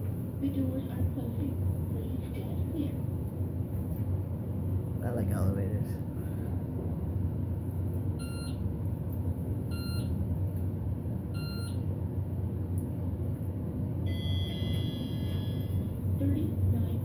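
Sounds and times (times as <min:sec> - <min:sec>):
elevator hum: 0:06.0 - 0:17.0.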